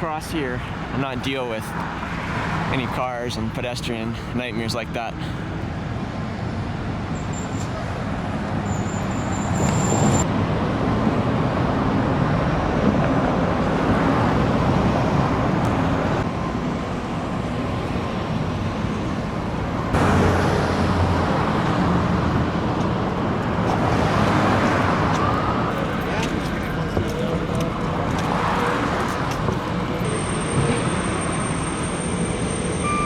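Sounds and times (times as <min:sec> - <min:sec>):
passing cars: 0:00.0 - 0:33.0
loud vehicle passing: 0:07.8 - 0:32.8.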